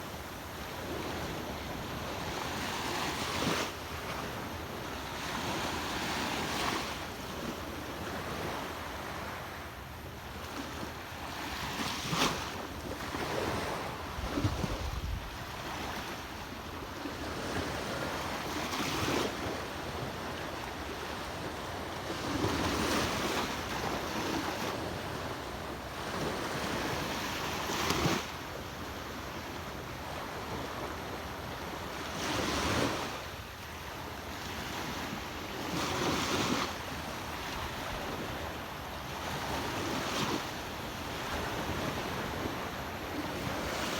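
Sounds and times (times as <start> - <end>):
wind rumble on microphone: 10.5 - 33.2.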